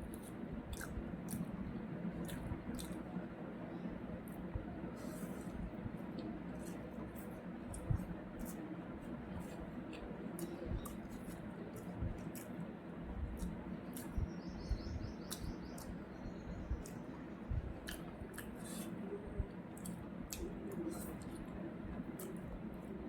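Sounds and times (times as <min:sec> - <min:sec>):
crunchy chewing: 0:00.0 - 0:03.2, 0:04.3 - 0:14.3, 0:15.2 - 0:22.9
steady low hum: 0:00.0 - 0:23.0.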